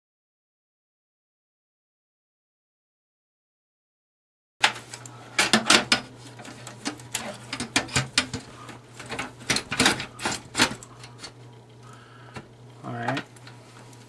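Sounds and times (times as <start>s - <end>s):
low steady hum: 4.6s - 14.0s.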